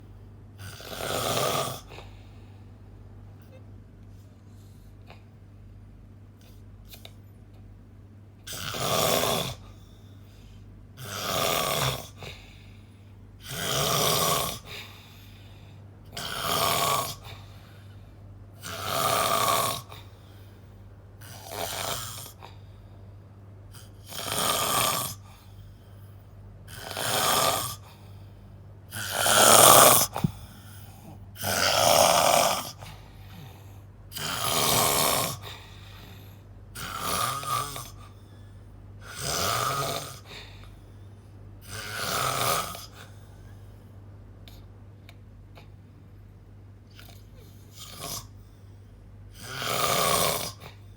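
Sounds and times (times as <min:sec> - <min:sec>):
person snoring loudly: 0:00.6 - 0:02.1, 0:08.5 - 0:09.7, 0:11.0 - 0:12.5, 0:13.4 - 0:15.2, 0:16.1 - 0:17.6, 0:18.6 - 0:20.3, 0:21.2 - 0:22.6, 0:23.7 - 0:25.4, 0:26.7 - 0:28.0, 0:28.9 - 0:35.9, 0:36.7 - 0:38.2, 0:39.0 - 0:40.6, 0:41.6 - 0:43.1, 0:46.9 - 0:48.3, 0:49.3 - 0:50.8.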